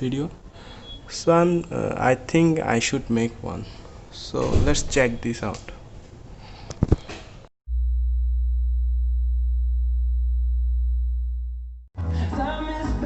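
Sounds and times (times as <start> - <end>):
low-pitched sine test tone: 7.6 - 11.9
music: 12.0 - 13.0.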